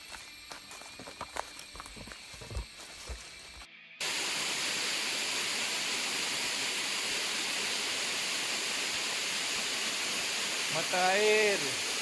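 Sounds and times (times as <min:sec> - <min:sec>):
footsteps on forest trail: 0:00.0 - 0:03.7
waterfall roaring: 0:04.0 - 0:12.0.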